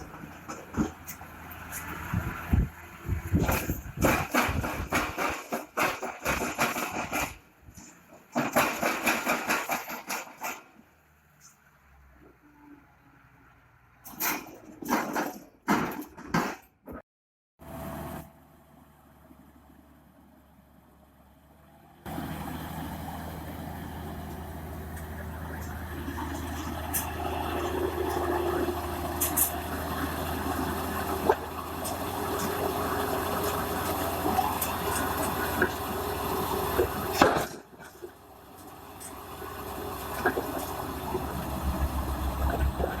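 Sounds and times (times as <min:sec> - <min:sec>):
diesel engine running: 0:00.0 - 0:14.0, 0:17.6 - 0:43.0
machinery knocks and clanks: 0:02.5 - 0:07.4, 0:08.1 - 0:10.7.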